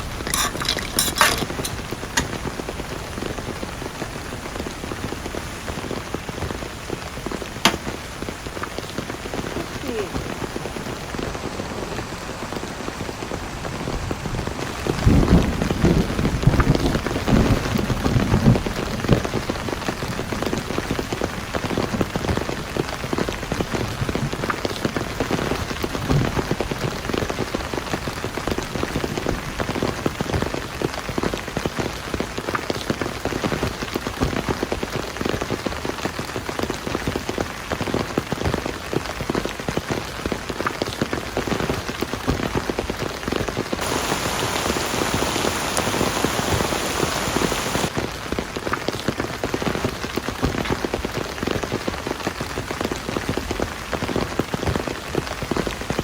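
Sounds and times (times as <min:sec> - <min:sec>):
heavy rain falling: 0:00.0 - 0:56.0
thunder rumble: 0:43.8 - 0:47.9.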